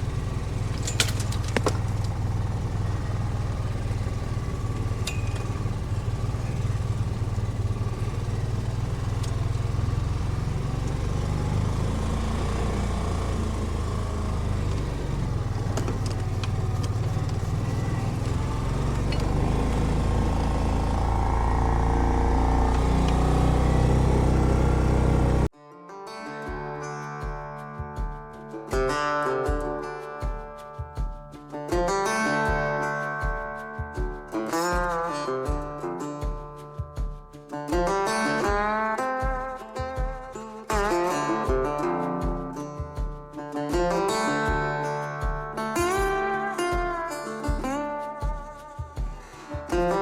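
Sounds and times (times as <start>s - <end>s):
sharp knocks and rattles: 0.0s - 25.5s
utility vehicle engine hum: 0.0s - 25.5s.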